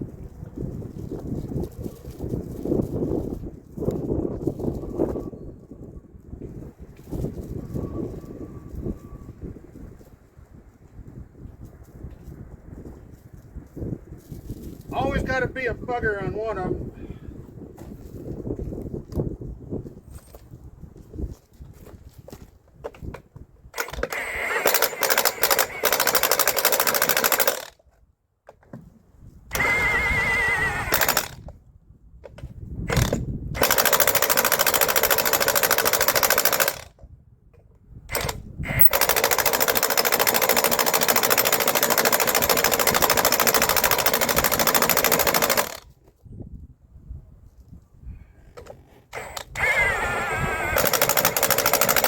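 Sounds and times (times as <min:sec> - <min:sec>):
impact wrench hammering lug nuts: 0:23.8 - 0:27.7, 0:29.6 - 0:31.4, 0:32.9 - 0:36.9, 0:38.2 - 0:45.8, 0:50.6 - 0:52.0.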